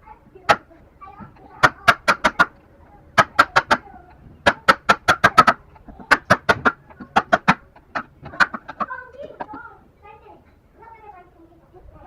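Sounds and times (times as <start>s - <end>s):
hand tool knocking on wood: 1.6s - 2.5s, 3.2s - 9.6s.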